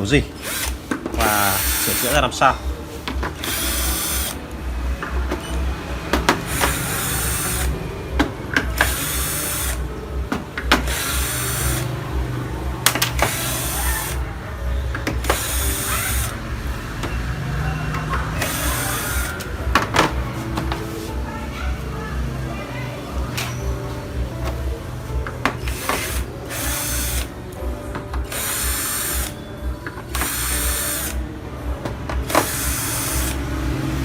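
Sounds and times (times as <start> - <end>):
electric screwdriver whirring: 0.4 - 2.2, 3.3 - 4.4, 6.4 - 7.8, 8.6 - 9.8, 10.8 - 12.0, 12.9 - 14.2, 15.1 - 16.4, 18.4 - 19.6, 25.6 - 27.3, 28.2 - 29.4, 30.1 - 31.2, 32.3 - 33.4.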